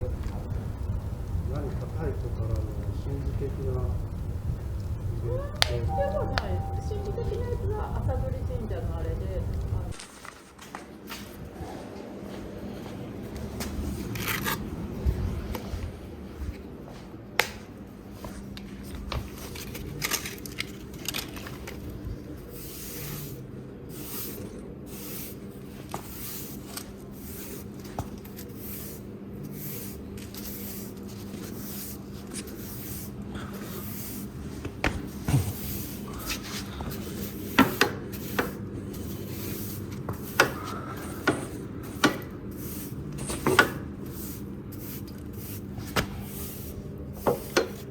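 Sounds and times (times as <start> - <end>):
steady low hum: 0.0 - 10.1.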